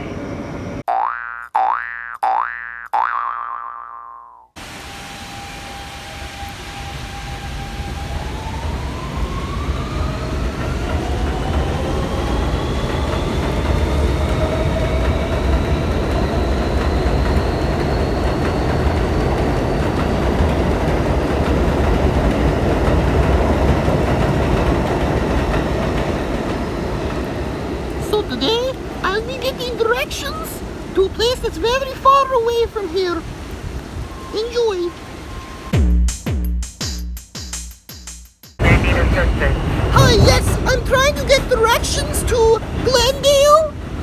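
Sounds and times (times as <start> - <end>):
subway train motor whine: 0.0 - 0.8, 4.6 - 35.7, 38.6 - 44.0
wheels rumbling on track: 4.6 - 35.7, 38.6 - 44.0.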